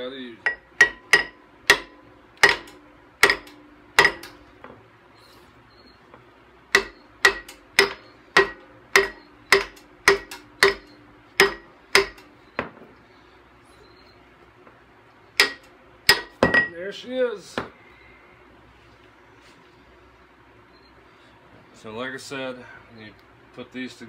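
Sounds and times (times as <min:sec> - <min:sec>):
sledgehammer striking metal: 0:00.5 - 0:04.4, 0:06.7 - 0:12.3, 0:15.4 - 0:16.8.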